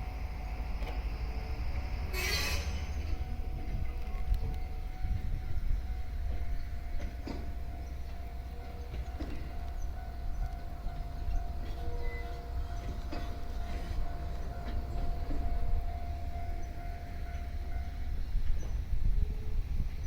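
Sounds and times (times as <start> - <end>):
train rumbling: 0.0 - 20.0.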